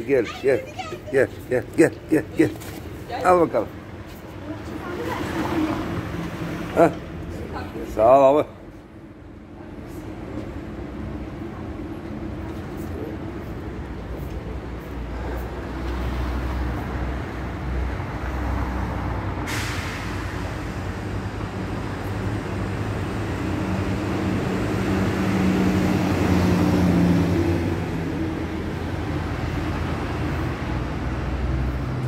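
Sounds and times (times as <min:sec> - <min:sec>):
heavy vehicle engine hum: 0:00.0 - 0:32.0
road traffic: 0:00.0 - 0:32.0
short sharp hiss: 0:19.5 - 0:20.4.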